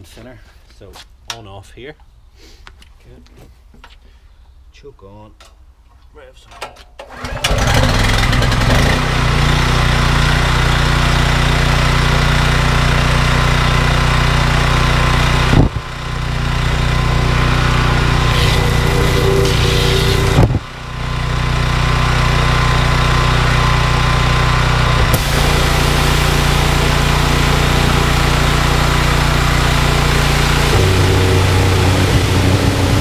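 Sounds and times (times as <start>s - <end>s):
petrol engine running: 7.1s - 33.0s
engine cutoff click: 25.0s - 28.6s.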